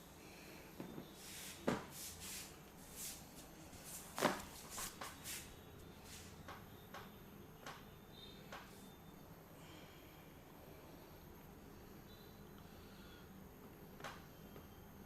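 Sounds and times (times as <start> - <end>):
hands rubbing hair and skin: 1.2 - 5.5.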